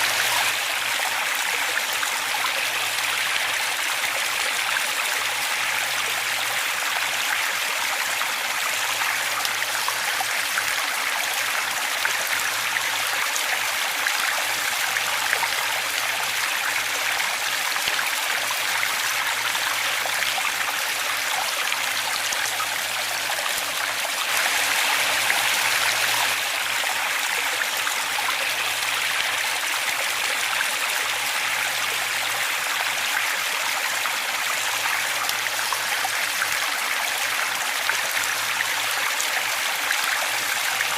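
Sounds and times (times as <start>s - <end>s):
waterfall rushing: 17.1s - 31.6s.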